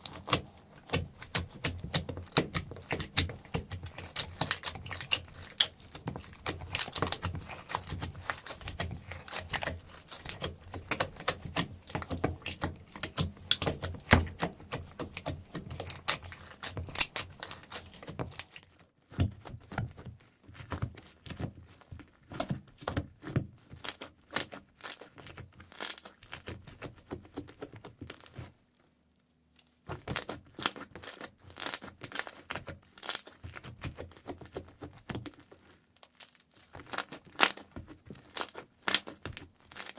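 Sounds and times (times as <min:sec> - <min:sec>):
slime squished by hand crackling: 0:00.0 - 0:20.0, 0:29.8 - 0:39.9.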